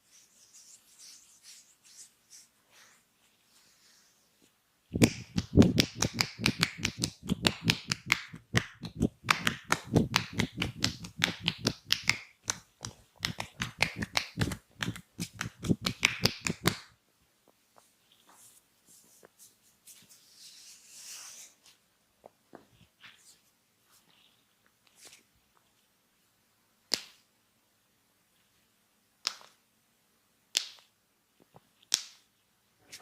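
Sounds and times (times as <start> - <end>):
hands slapping body: 5.0 - 16.9, 26.9 - 27.2, 29.2 - 29.6, 30.5 - 30.9, 31.9 - 32.3.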